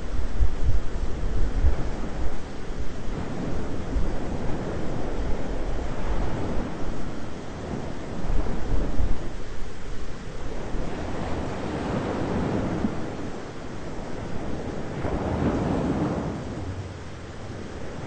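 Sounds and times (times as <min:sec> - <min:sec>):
rain: 0:00.0 - 0:18.0
wind: 0:00.0 - 0:18.0
thunder rumbling: 0:11.1 - 0:18.0.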